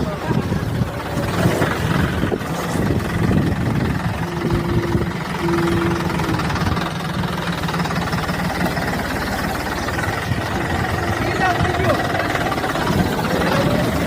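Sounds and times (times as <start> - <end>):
engine chugging: 0.0 - 14.0
short high tones: 4.2 - 7.2.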